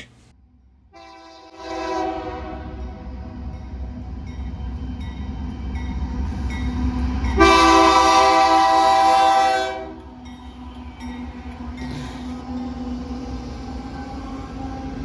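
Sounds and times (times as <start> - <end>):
locomotive horn blast: 1.0 - 2.8, 7.4 - 10.0.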